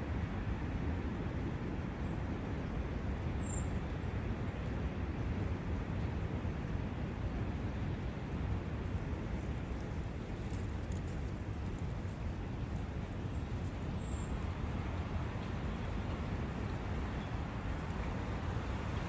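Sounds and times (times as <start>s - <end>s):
brook running: 9.0s - 19.0s.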